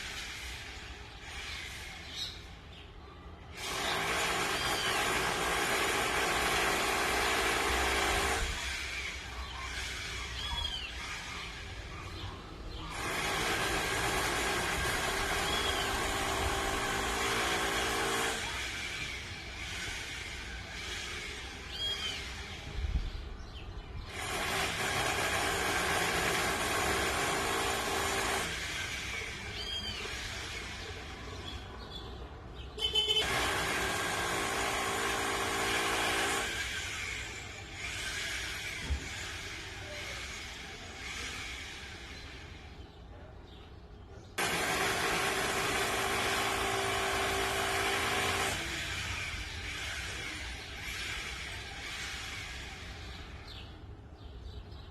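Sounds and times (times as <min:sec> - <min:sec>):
electric demolition hammer: 0:03.6 - 0:09.3, 0:12.9 - 0:21.6, 0:24.1 - 0:31.1, 0:33.2 - 0:41.9, 0:44.4 - 0:53.0.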